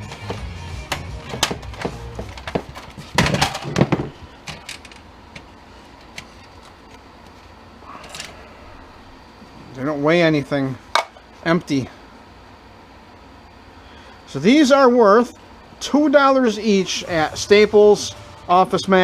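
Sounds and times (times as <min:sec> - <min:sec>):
plastic parts clicking and knocking: 0:00.9 - 0:05.5.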